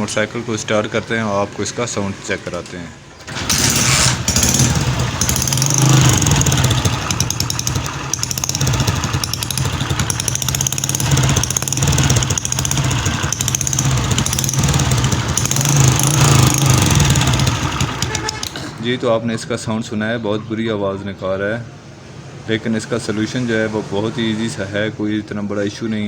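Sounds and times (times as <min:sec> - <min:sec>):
motorcycle engine idling with ticking: 0:03.4 - 0:18.8.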